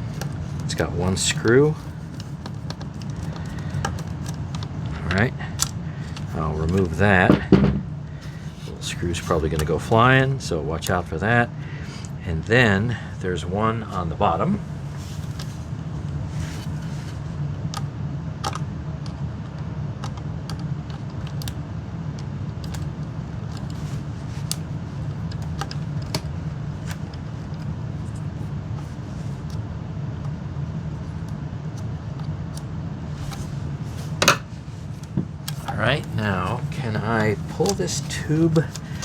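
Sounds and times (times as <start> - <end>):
clicks of plastic parts handled: 0.0 - 10.1, 17.7 - 29.6, 31.1 - 39.0
steady low hum: 0.0 - 39.0.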